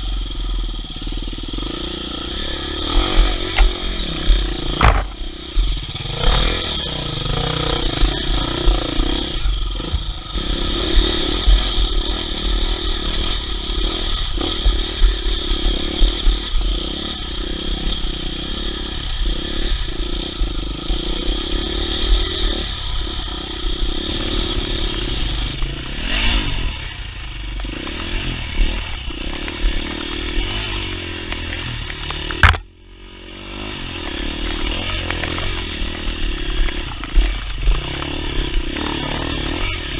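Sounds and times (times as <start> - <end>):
motorcycle engine running: 0.0 - 39.9
bike clattering over rough ground: 4.7 - 5.3, 27.4 - 32.8, 34.0 - 39.6.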